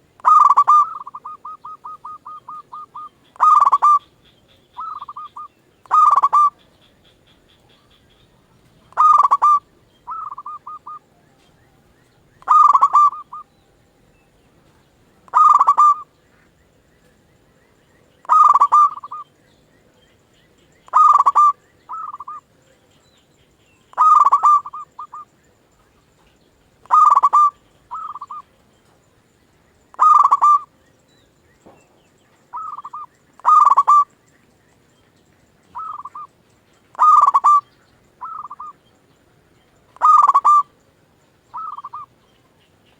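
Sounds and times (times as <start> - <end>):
dove cooing: 0.0 - 4.2, 4.8 - 13.6, 14.6 - 16.2, 18.2 - 19.4, 20.9 - 22.5, 23.9 - 25.3, 25.9 - 28.6, 29.9 - 30.8, 32.5 - 34.1, 35.6 - 36.3, 36.9 - 38.8, 39.9 - 40.8, 41.5 - 42.3.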